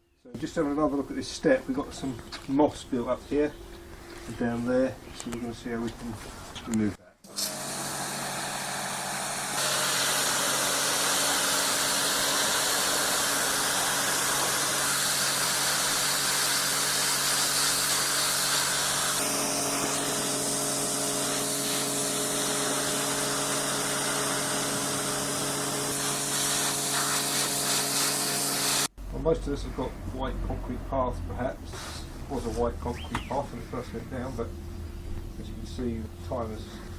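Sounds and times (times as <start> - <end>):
pressure washer motor hum: 7.3 - 28.9
water jet hissing on concrete: 7.4 - 28.9.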